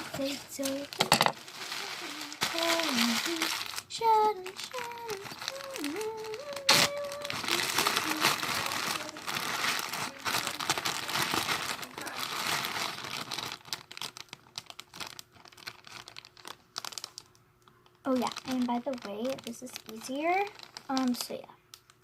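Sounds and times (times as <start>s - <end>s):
plastic bags crinkling: 0.0s - 22.0s
sharp plastic crack: 4.5s - 17.2s.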